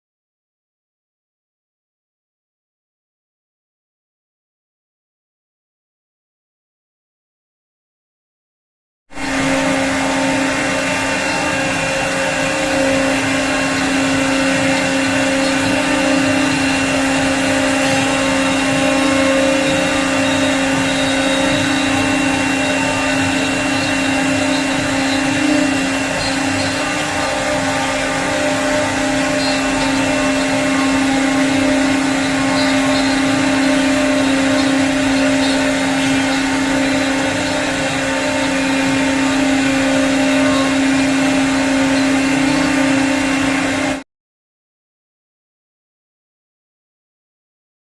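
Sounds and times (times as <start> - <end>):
wood router whine and cutting hiss: 9.2 - 44.0.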